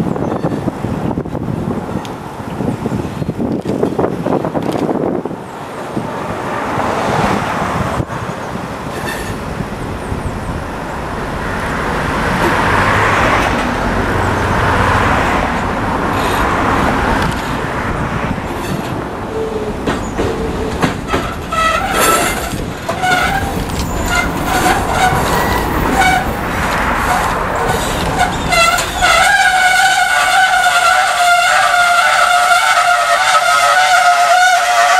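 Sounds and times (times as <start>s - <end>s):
diesel locomotive engine rumbling: 0.0s - 34.9s
rail noise: 0.0s - 34.9s
locomotive air horn blasts: 20.4s - 34.9s.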